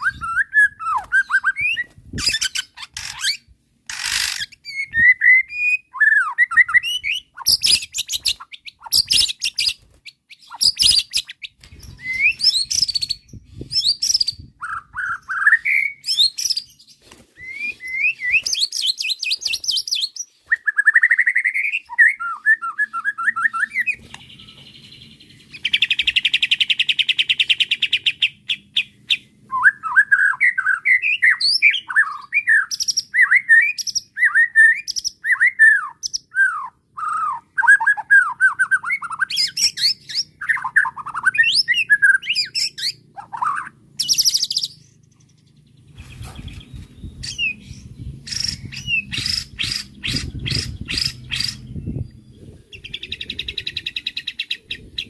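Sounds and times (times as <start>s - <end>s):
bird singing whistled phrases: 0.0s - 3.4s, 4.6s - 16.7s, 17.4s - 26.8s, 29.5s - 44.8s.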